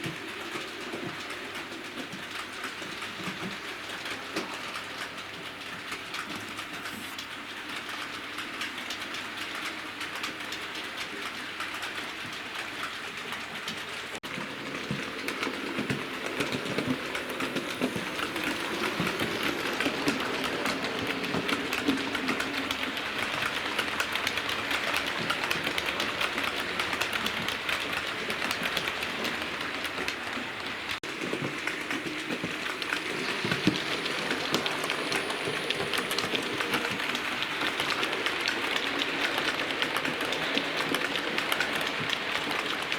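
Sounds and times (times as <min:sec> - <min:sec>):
model train wheels rattling on rails: 0:00.0 - 0:42.9
model train motor running: 0:14.5 - 0:42.9.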